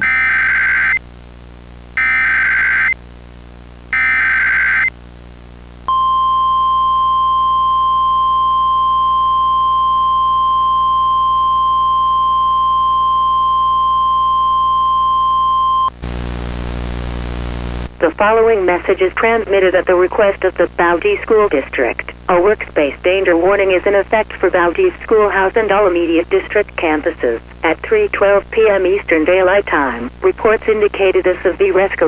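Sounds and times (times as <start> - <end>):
screeching digital data bursts: 2.0 - 3.0, 4.0 - 4.9
static hiss: 15.9 - 32.0.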